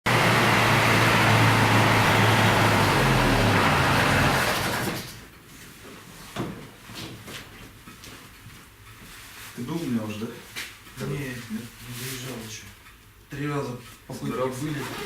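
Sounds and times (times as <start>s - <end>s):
car engine running: 0.1s - 5.0s.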